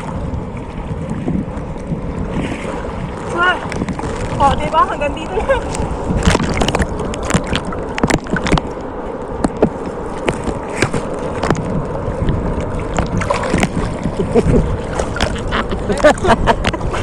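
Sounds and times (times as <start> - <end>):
seawater sloshing: 0.0 - 17.0
short splashes: 12.8 - 17.0.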